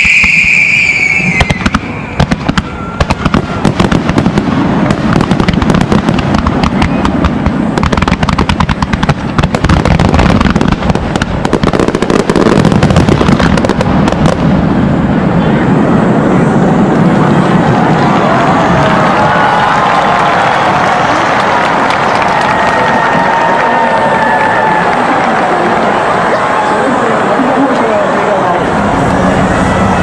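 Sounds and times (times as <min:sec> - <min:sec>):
firework whistle: 0:00.0 - 0:14.4, 0:28.6 - 0:30.0
rapid crackling pops: 0:01.4 - 0:14.5.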